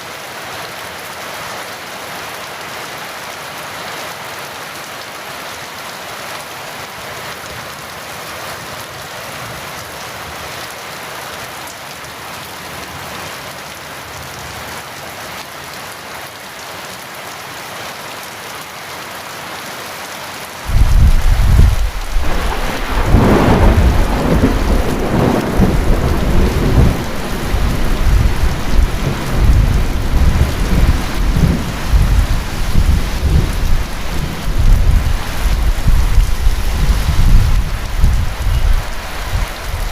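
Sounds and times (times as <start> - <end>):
heavy rain: 0.0 - 39.9
thunder rumbling: 20.7 - 39.9.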